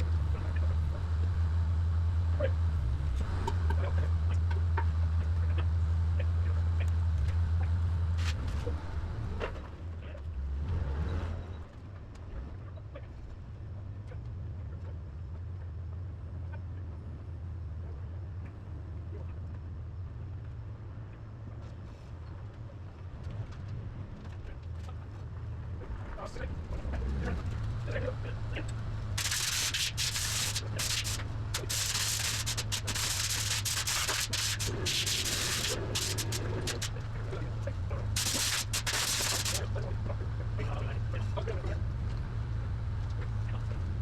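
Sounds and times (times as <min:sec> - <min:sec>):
loud low motor hum: 0:28.8 - 0:37.3, 0:38.1 - 0:39.8.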